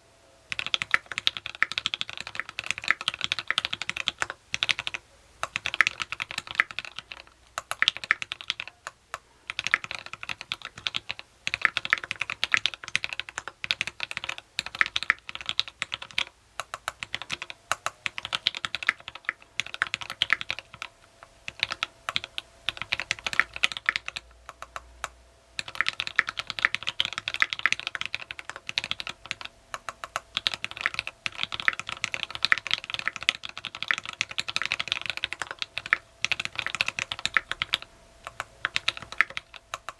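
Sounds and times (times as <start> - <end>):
mechanical keyboard typing: 0.5 - 39.9.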